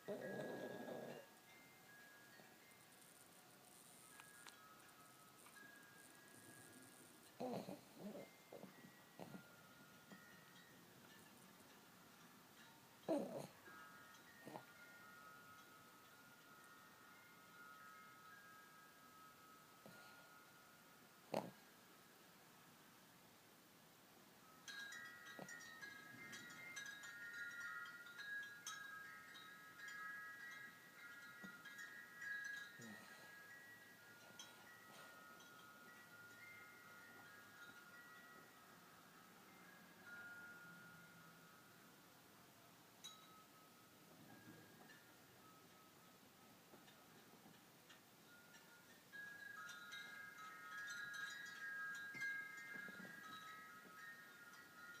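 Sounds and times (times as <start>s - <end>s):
dog snoring: 0.0s - 1.3s, 6.5s - 9.4s, 13.1s - 13.6s
wind chimes ringing: 0.0s - 22.7s, 24.4s - 55.0s.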